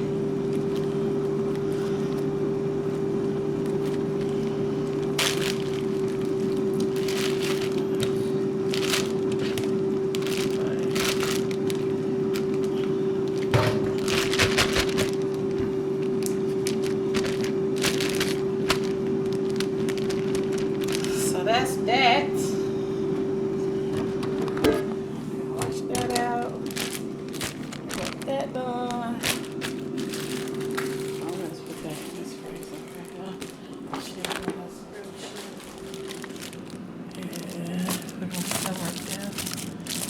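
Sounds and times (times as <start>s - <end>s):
appliance fan humming: 0.0s - 40.0s
kitchen things clicking and knocking: 13.4s - 15.6s.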